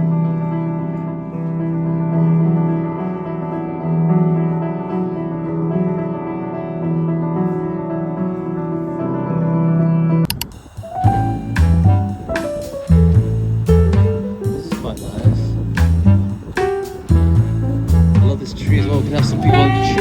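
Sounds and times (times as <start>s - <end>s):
solo piano chords: 0.0s - 20.0s
sharp clicks: 10.3s - 10.6s.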